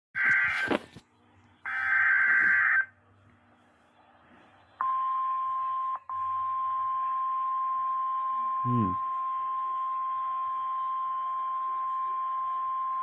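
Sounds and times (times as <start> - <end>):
steady warning alarm tone: 0.2 - 0.8, 1.7 - 2.9, 4.8 - 13.0.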